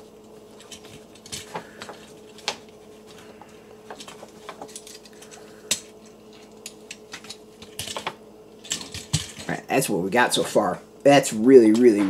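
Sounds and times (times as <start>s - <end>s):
plastic parts clicking and tapping: 6.6s - 9.5s.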